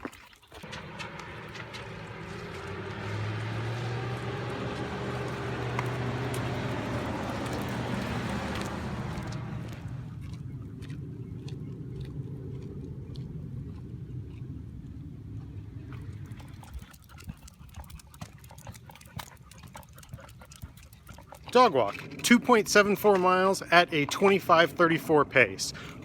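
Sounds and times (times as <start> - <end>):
car driving past: 0.6 - 16.8
traffic rumble: 0.6 - 26.0.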